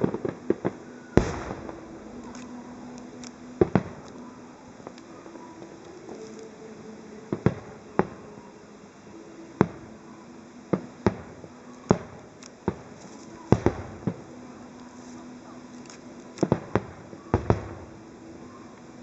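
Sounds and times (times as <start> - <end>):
firework shells bursting: 0.0 - 4.2.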